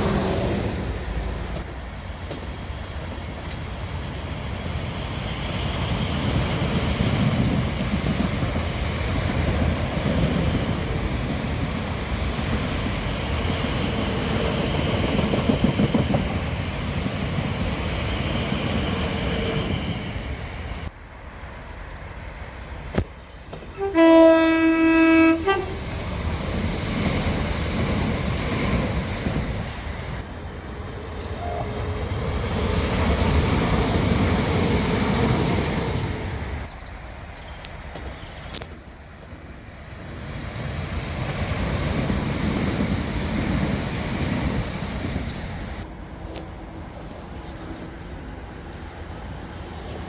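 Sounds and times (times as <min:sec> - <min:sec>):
passing train rumble: 0:00.0 - 0:50.0
train horn: 0:23.7 - 0:25.9, 0:31.2 - 0:32.2.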